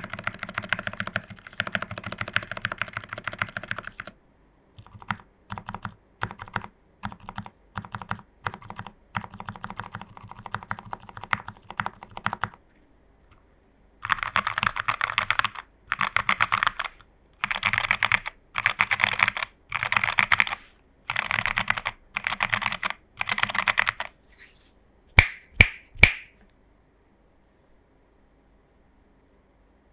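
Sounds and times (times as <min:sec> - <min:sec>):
mechanical keyboard typing: 0:00.0 - 0:04.2, 0:04.8 - 0:12.6, 0:14.0 - 0:24.1.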